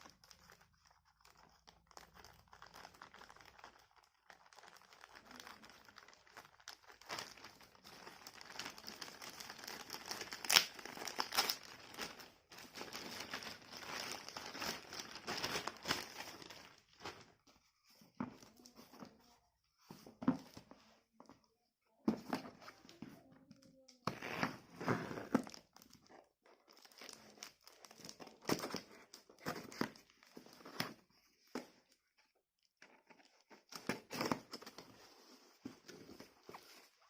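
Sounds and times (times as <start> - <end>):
packaging crinkling and crumpling: 0.0 - 17.5, 24.0 - 32.0.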